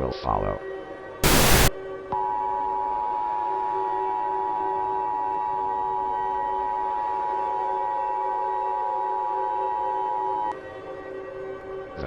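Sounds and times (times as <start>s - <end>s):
faint steady drone: 1.2s - 2.3s.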